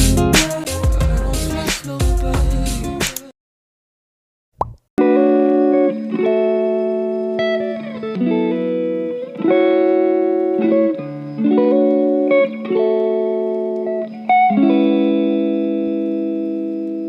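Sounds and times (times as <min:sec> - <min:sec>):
plucked string chords: 0:05.0 - 0:17.0.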